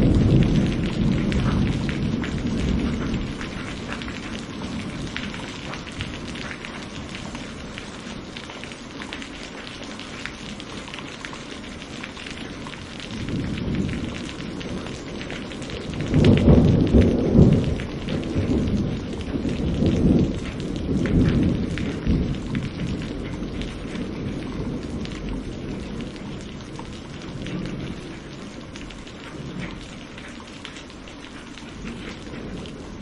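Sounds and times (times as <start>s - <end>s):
thunder rumbling: 0.0s - 8.5s, 11.6s - 30.4s, 31.6s - 33.0s
heavy rain: 0.0s - 33.0s.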